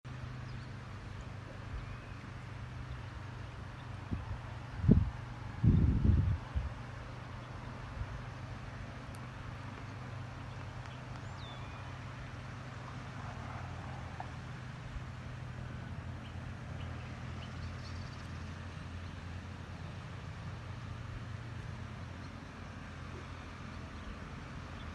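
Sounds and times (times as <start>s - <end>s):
floodwater rushing: 6.7s - 17.4s, 18.4s - 24.9s.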